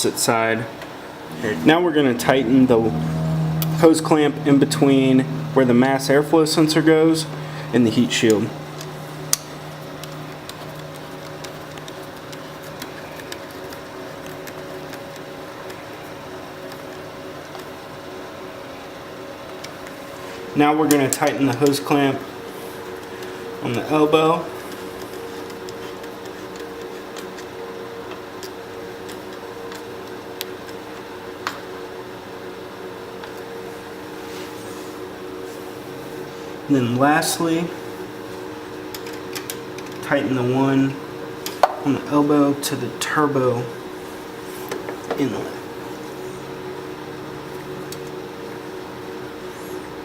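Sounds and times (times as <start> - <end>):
steady hum: 0.0 - 13.8
low background hum: 0.0 - 50.0.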